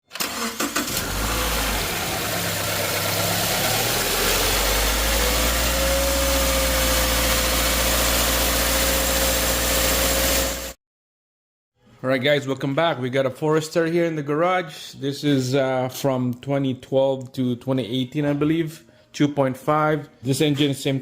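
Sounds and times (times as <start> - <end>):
car engine running: 0.9 - 10.7.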